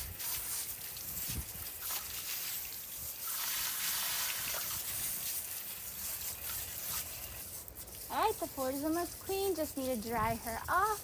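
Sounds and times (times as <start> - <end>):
water spraying on truck: 0.0 - 11.0.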